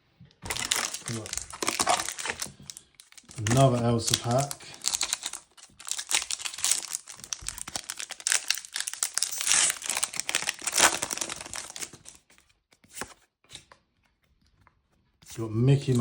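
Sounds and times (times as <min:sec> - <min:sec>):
foil wrapper tearing and crinkling: 0:00.4 - 0:12.3.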